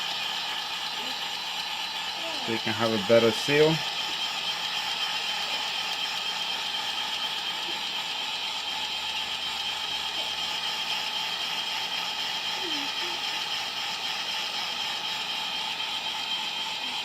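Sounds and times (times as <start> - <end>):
heat gun blowing air: 0.0 - 17.0.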